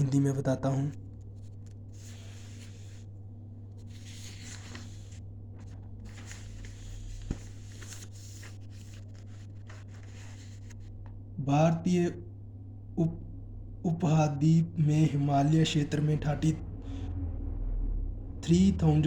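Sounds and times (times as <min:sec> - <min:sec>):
low electrical hum: 0:00.0 - 0:19.0
rustling and scraping handling noise: 0:01.0 - 0:11.2.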